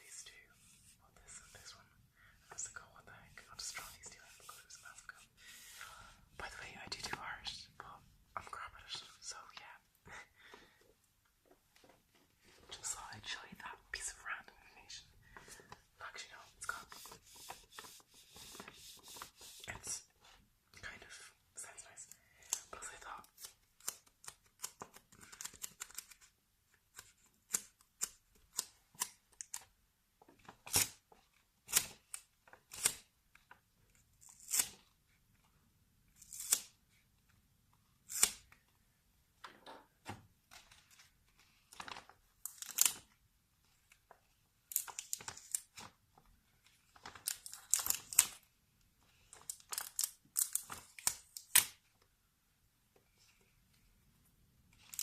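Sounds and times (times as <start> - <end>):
crisp tearing and crackling: 47.0 - 48.4.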